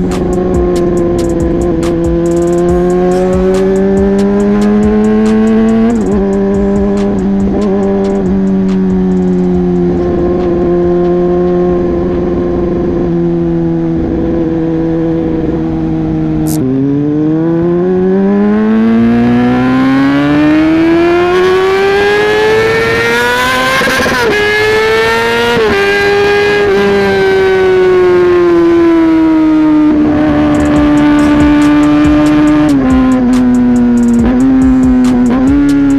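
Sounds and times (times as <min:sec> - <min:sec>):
motorcycle engine revving: 0:00.0 - 0:35.9.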